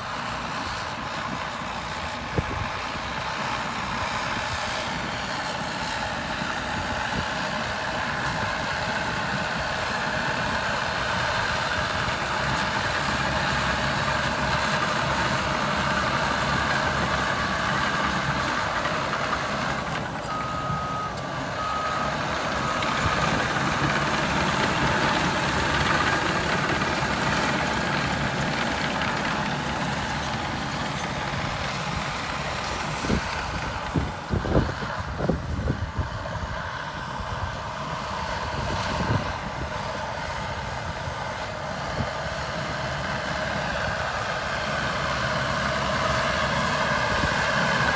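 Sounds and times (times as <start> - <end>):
bulldozer diesel engine running: 0.0 - 47.9
reversing alarm beeping: 19.6 - 24.0.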